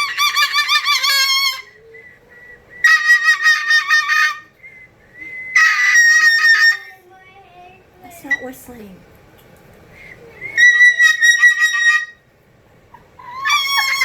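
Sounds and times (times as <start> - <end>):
cockatoo whistling: 0.0 - 6.9, 10.0 - 12.3, 13.0 - 14.0.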